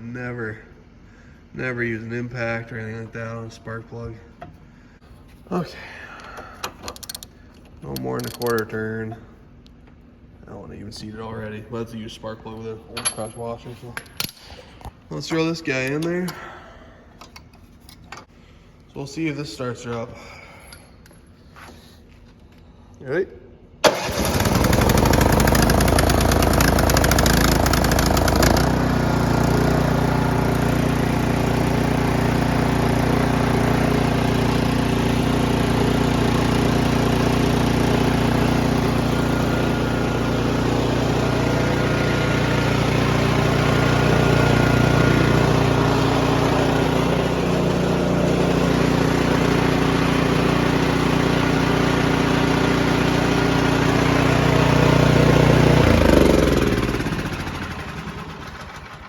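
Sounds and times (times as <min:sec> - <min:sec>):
small gas engine running: 0:23.8 - 0:59.0.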